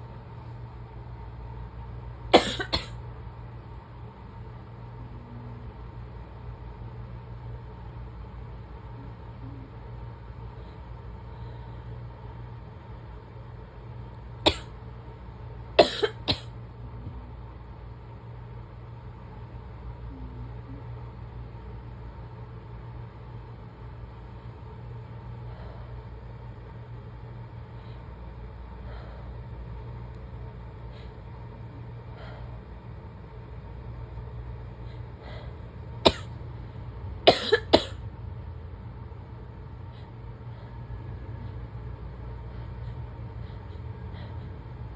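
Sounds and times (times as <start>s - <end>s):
low background hum: 0.0s - 44.9s
woman barking cough: 2.3s - 3.0s, 14.5s - 14.7s, 15.8s - 16.5s, 36.0s - 36.4s, 37.2s - 38.0s.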